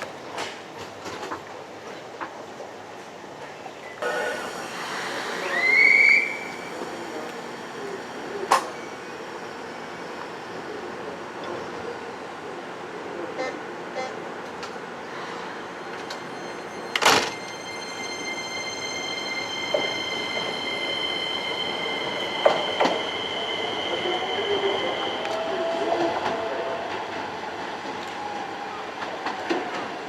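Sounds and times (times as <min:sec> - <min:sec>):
steady high-pitched tone: 0:15.8 - 0:25.7.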